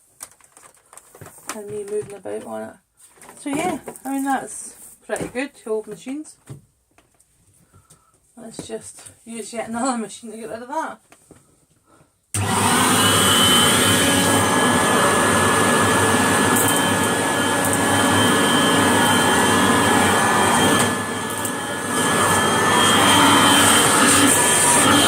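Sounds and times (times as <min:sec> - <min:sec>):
vacuum cleaner running: 0:12.4 - 0:25.0.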